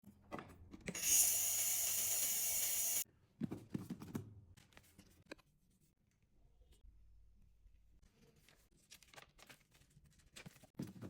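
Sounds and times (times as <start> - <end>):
loud hissing rasp: 1.0 - 3.0.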